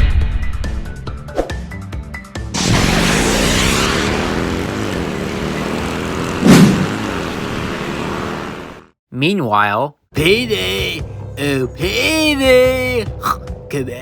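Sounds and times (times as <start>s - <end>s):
loud whoosh: 2.6s - 7.7s
vehicle engine revving: 2.6s - 9.0s.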